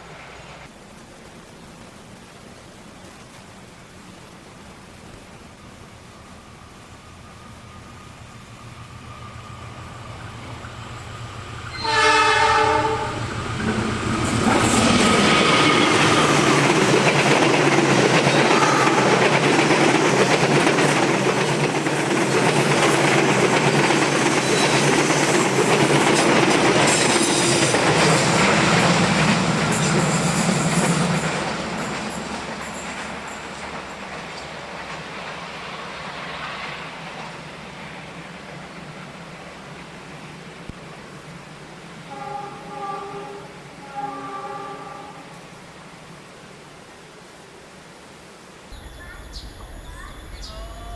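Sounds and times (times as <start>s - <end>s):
train horn blast: 11.7s - 13.3s, 18.4s - 19.2s, 42.1s - 45.6s
train wheels running over rails: 12.6s - 42.1s.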